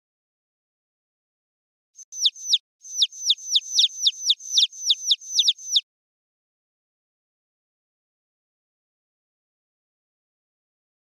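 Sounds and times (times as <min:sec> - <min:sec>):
rapid high downward chirps: 0:02.0 - 0:05.8.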